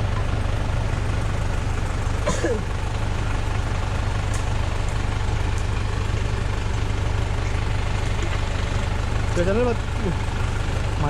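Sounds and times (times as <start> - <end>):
car engine low drone: 0.0 - 11.0.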